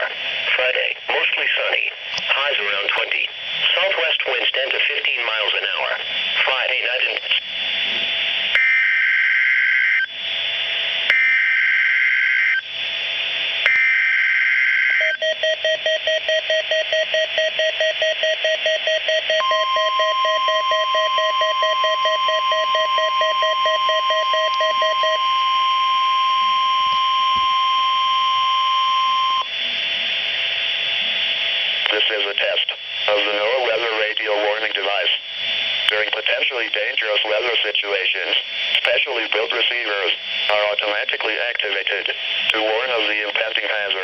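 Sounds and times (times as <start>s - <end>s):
fast pulsing alarm beep: 13.7s - 29.5s.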